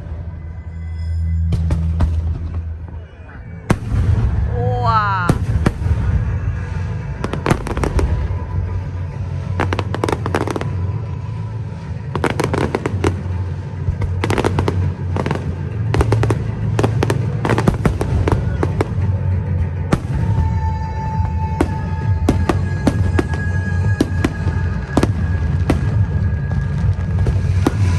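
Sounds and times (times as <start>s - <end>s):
low hum of music: 0.0s - 27.9s
fireworks bursting and crackling: 1.0s - 27.9s.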